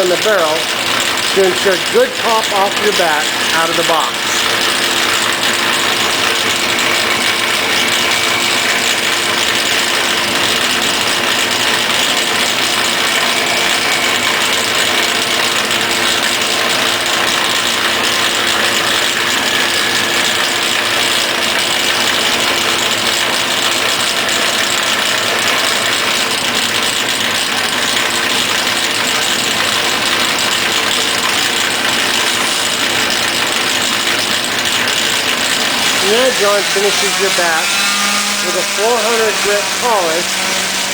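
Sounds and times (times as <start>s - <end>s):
lathe whirring and rattling: 0.0s - 40.9s
motor hum: 0.0s - 40.9s.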